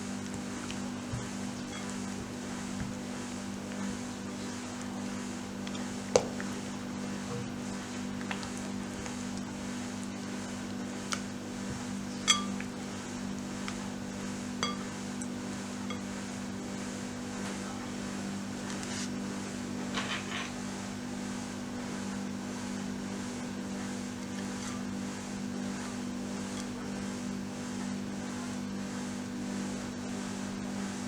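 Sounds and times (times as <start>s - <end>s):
steady low hum: 0.0s - 29.8s
utensil clinking against bowl: 1.2s - 2.2s, 12.2s - 12.7s, 14.6s - 16.1s.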